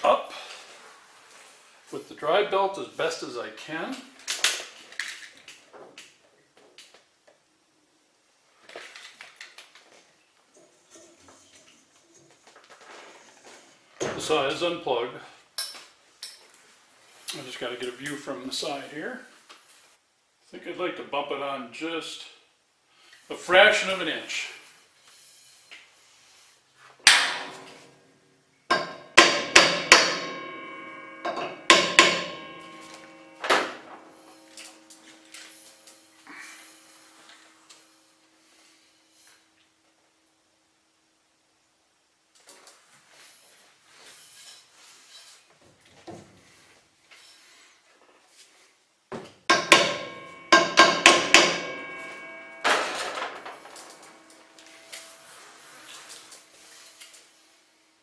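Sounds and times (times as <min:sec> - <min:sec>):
hammer striking metal pulley: 0:27.1 - 0:27.8, 0:28.7 - 0:36.3, 0:49.5 - 0:55.2
pulley ringing: 0:28.7 - 0:37.5, 0:49.5 - 0:56.8
rough metallic clatter: 0:28.7 - 0:37.8, 0:49.5 - 0:57.1.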